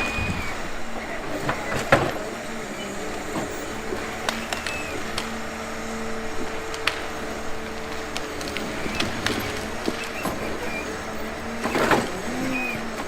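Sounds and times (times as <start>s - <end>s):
diesel engine and hydraulics droning: 0.0s - 13.0s
sharp cracks and knocks of wood: 0.0s - 13.0s.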